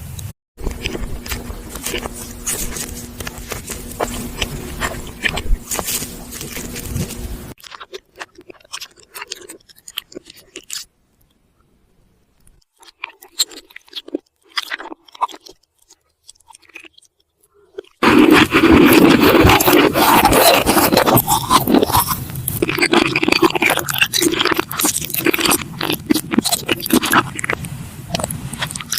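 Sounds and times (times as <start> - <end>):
crunching and chewing: 0.6 - 11.4, 12.4 - 28.9
mouth clicks: 12.6 - 28.9.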